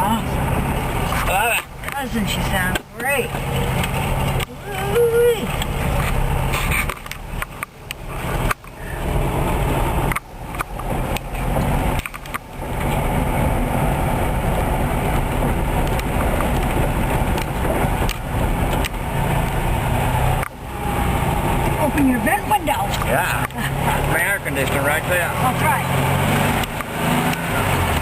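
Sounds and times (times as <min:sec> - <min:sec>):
car engine running: 0:00.0 - 0:28.0.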